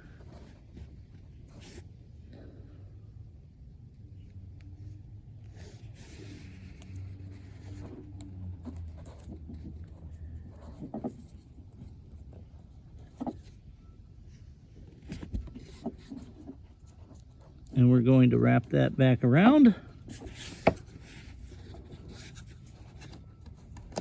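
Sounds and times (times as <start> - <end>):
tape rustling and scraping: 0.0 - 1.9, 5.4 - 18.8, 19.8 - 24.0.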